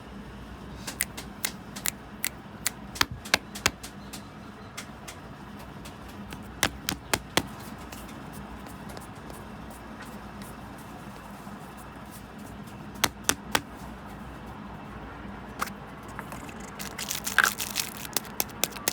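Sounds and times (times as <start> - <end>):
small tools tapping on work surface: 3.0 - 8.2.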